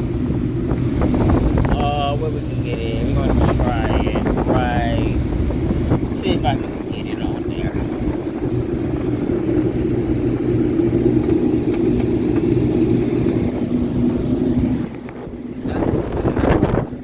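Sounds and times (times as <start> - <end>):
rooftop air conditioner humming: 0.0 - 17.0.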